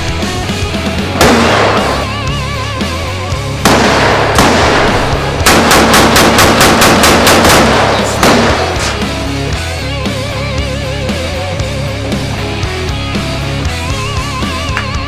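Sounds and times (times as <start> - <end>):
rock music: 0.0 - 15.0
gunshots: 1.0 - 9.9.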